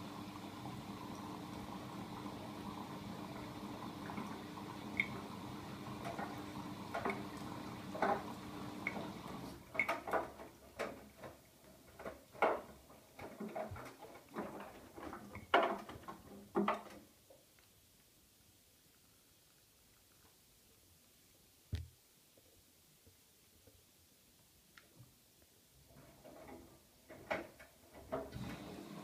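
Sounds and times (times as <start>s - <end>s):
washing machine motor hum: 0.0s - 15.4s, 26.2s - 29.0s.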